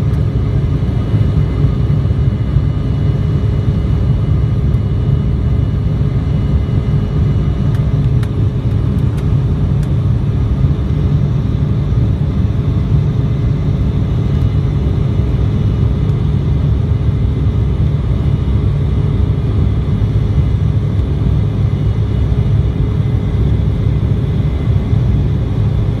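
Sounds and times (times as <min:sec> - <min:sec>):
jet engines rumbling: 0:00.0 - 0:26.0.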